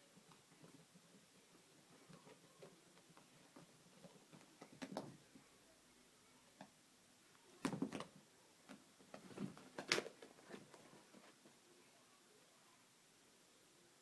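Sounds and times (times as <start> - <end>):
cat's paws tapping and scrabbling: 0.2 - 5.2, 7.6 - 11.5.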